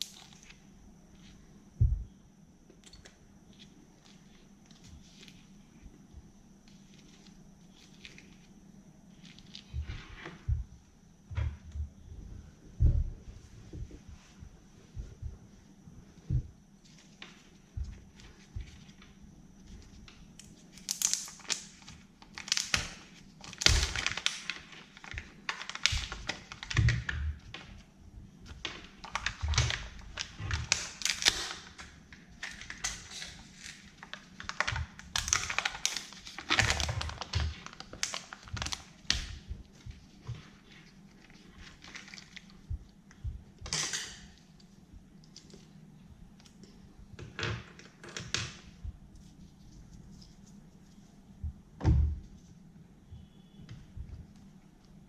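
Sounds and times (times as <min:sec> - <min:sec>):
candy wrappers crinkling: 0:20.4 - 0:27.7, 0:28.6 - 0:39.4, 0:40.7 - 0:42.6.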